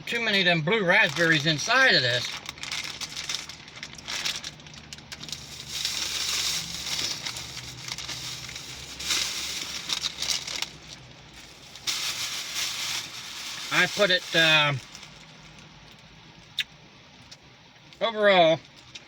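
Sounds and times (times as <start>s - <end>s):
plastic bag crinkling: 0.8s - 15.7s.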